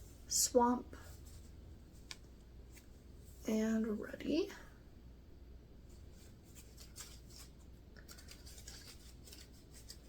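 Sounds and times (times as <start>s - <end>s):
low room hum: 0.0s - 10.0s
rustling packaging: 5.9s - 10.0s.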